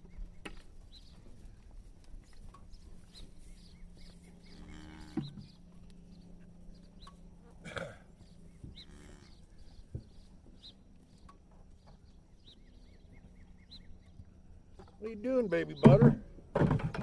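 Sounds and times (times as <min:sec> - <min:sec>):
small birds chirping: 0:00.0 - 0:16.1
cattle mooing: 0:04.4 - 0:05.4, 0:08.8 - 0:09.5.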